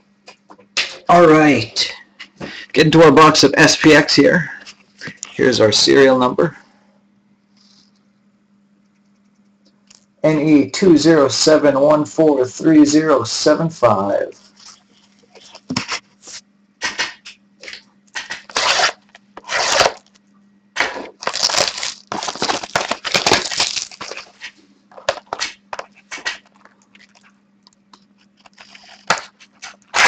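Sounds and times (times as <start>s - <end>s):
packaging crinkling and tearing: 17.6s - 30.0s.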